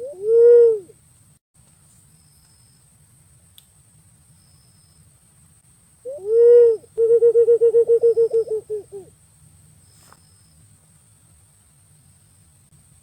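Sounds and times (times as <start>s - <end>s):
pigeon short hooting notes: 0.0s - 0.9s, 6.1s - 9.1s.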